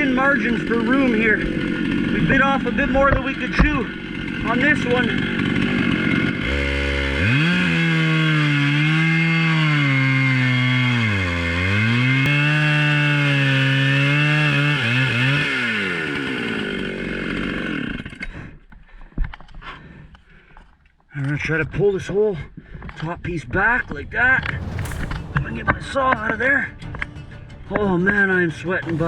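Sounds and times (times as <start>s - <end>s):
chainsaw cutting through log: 0.0s - 18.4s.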